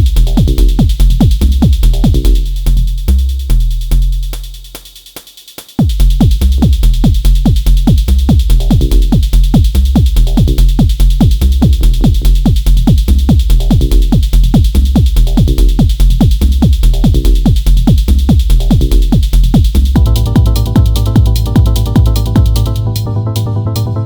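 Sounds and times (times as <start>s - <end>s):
kick drum: 0.0s - 24.0s
percussive synth notes: 18.5s - 24.0s.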